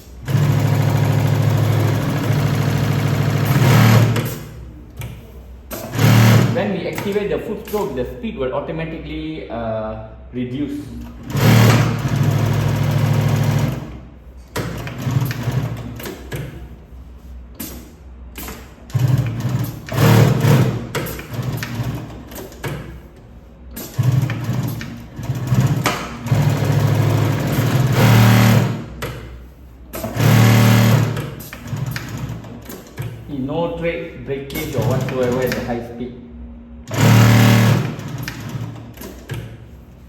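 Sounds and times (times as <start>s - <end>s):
industrial sewing machine stitching: 0.0s - 4.6s, 5.7s - 7.2s, 11.1s - 14.0s, 14.6s - 16.5s, 18.4s - 22.8s, 23.8s - 29.0s, 29.9s - 33.0s, 34.5s - 35.7s, 36.9s - 39.4s.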